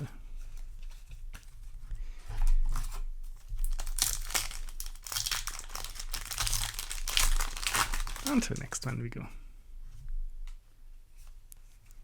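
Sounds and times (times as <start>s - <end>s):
foil wrapper crinkling: 2.5s - 8.9s.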